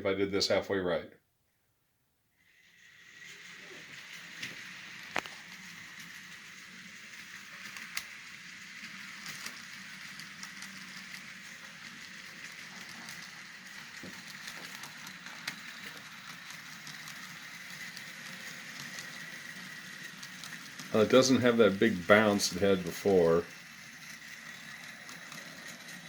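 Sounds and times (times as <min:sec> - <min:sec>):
model train motor whir: 0:02.4 - 0:26.0
wheels clicking over rail joints: 0:07.1 - 0:26.0.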